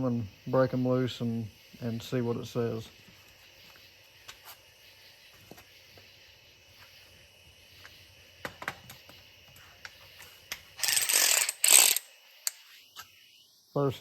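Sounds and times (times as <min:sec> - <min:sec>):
cordless ratchet spinning bolt: 0:10.8 - 0:12.1.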